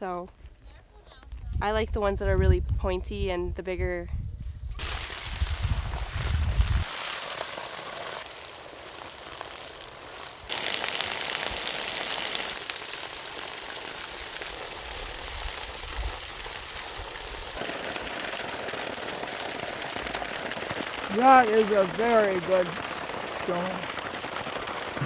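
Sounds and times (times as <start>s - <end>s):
rushing outdoor noise: 21.0s - 25.0s.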